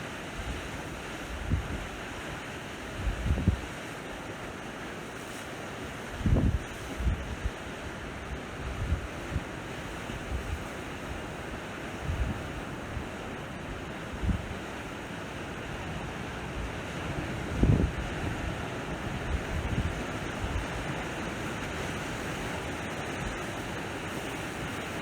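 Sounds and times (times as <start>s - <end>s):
sea waves washing onto shore: 0.0s - 25.0s
wind buffeting microphone: 6.2s - 7.5s, 16.7s - 25.0s.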